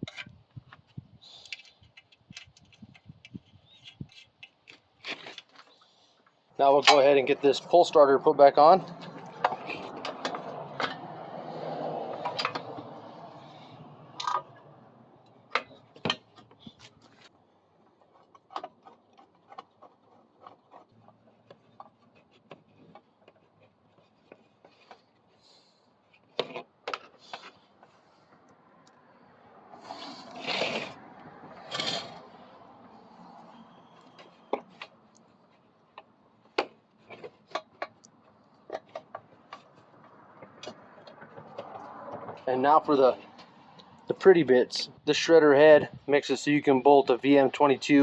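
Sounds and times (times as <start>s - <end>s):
rustling and scraping: 0.0s - 14.6s, 15.4s - 28.4s, 29.8s - 43.8s
hand tools clicking and knocking: 8.8s - 11.3s, 12.1s - 13.0s, 35.9s - 42.4s.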